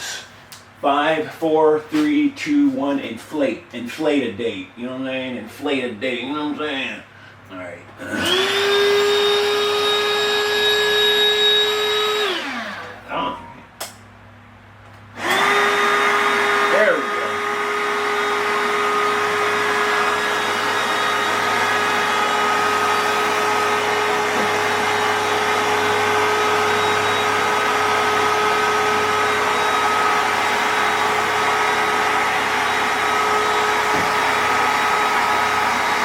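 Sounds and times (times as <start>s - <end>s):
electric air pump whirring: 8.0s - 13.2s, 15.0s - 36.0s.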